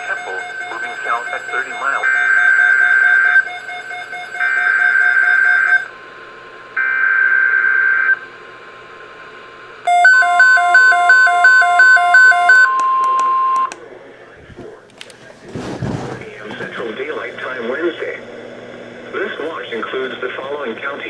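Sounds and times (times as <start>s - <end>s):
steady radio alert tone: 0.0s - 3.6s, 9.9s - 13.8s
electronic two-note alarm beeps: 9.9s - 13.7s.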